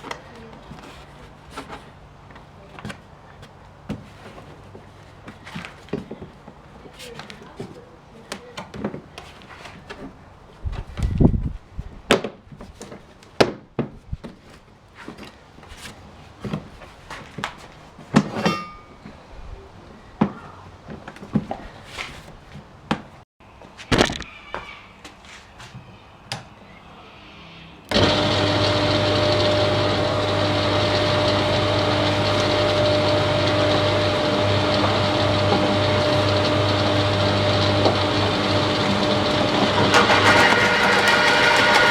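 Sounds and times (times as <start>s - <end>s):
chipper-shredder motor humming: 27.9s - 41.9s
hard parts clattering: 39.8s - 41.9s.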